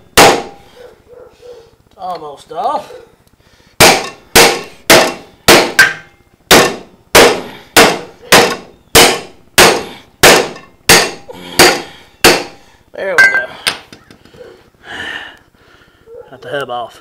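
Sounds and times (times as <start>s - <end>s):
hammer clanging on metal: 3.8s - 12.6s.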